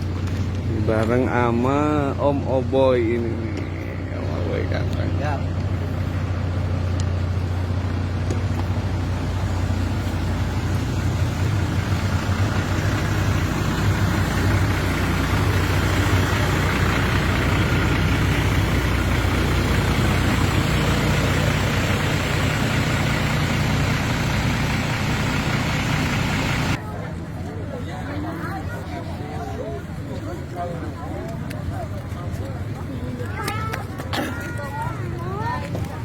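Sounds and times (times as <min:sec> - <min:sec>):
road noise hiss: 0:00.0 - 0:27.5
vehicle engine running: 0:00.0 - 0:36.0.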